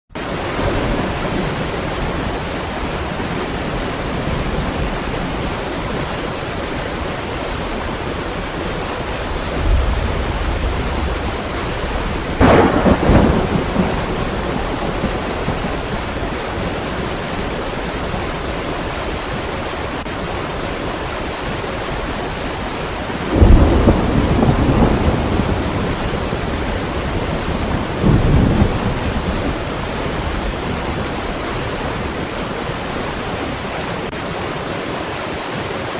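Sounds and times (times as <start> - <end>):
heavy rain: 0.1 - 35.9
thunder rumbles: 0.2 - 34.4
thunder crack: 7.5 - 18.2, 23.2 - 34.2.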